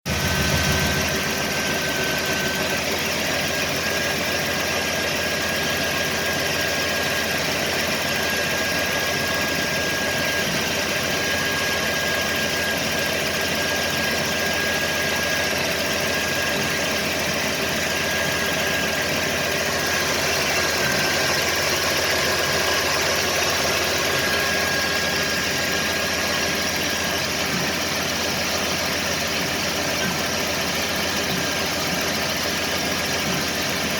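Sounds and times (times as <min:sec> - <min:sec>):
car engine idling: 0:00.1 - 0:04.9, 0:16.7 - 0:33.9
thin steady whine: 0:00.1 - 0:33.9.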